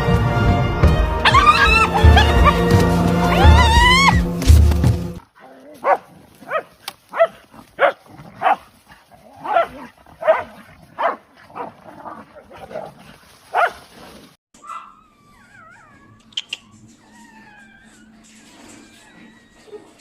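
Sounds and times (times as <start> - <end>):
dog barking: 1.2 - 4.2, 5.4 - 8.7, 9.4 - 12.9, 13.5 - 13.8, 14.6 - 15.0.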